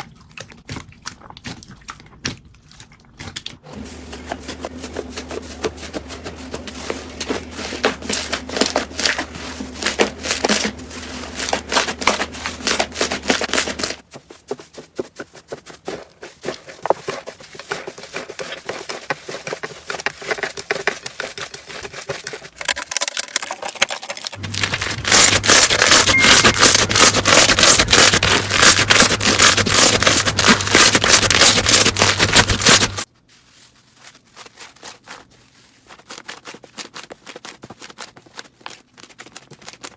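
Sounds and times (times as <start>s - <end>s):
slime crackling and popping: 22.6s - 33.1s.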